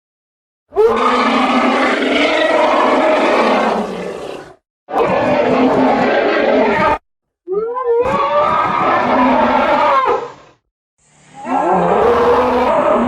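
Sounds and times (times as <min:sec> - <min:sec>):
elephant roaring: 0:00.8 - 0:07.0, 0:11.4 - 0:13.0.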